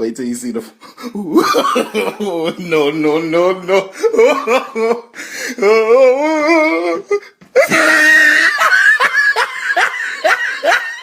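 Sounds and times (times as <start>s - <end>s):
people laughing loudly: 1.2s - 3.0s, 3.7s - 5.1s, 7.6s - 11.0s.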